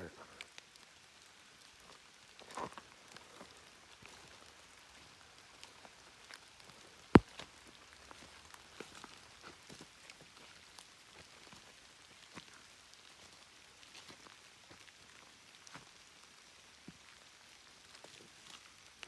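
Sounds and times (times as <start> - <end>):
faint steady rain: 0.0 - 19.0.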